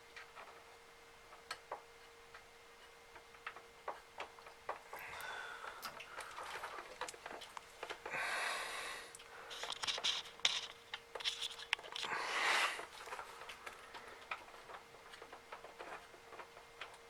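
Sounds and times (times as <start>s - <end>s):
plastic parts being handled: 9.5s - 12.2s.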